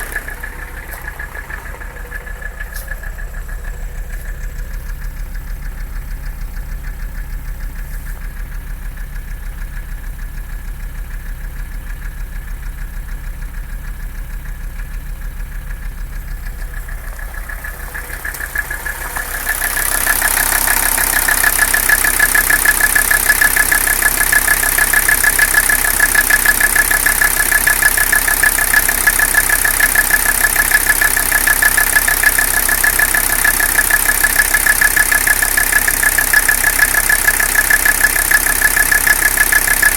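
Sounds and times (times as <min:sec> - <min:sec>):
diesel engine idling with knock: 0:00.0 - 0:39.9
high whine: 0:16.6 - 0:26.4.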